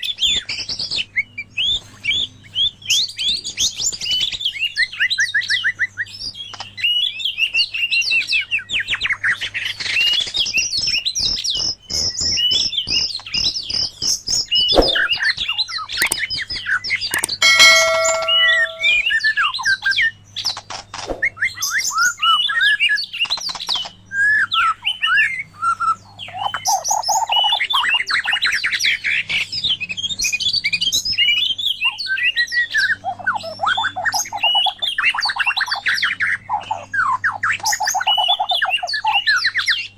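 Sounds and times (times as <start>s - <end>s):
sharp clicks: 17.2s - 19.0s.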